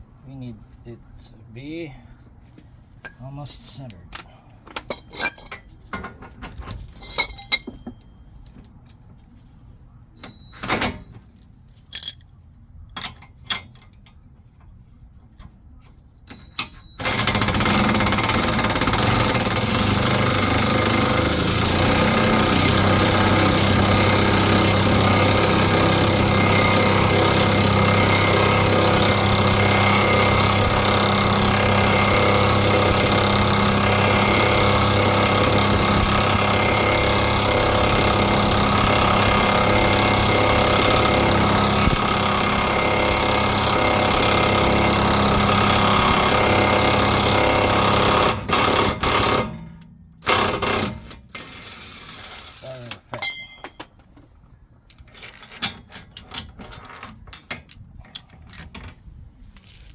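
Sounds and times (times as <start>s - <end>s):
metal tool pieces clinking: 4.8s - 5.7s, 7.0s - 8.1s, 11.9s - 12.3s
impact wrench running: 17.0s - 52.6s.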